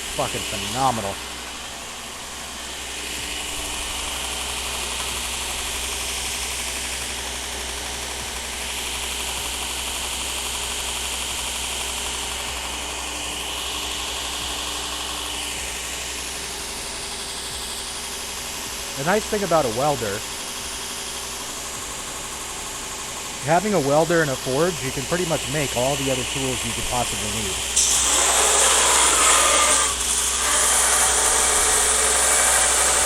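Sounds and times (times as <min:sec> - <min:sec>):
machine hissing with high whine: 0:00.0 - 0:33.0.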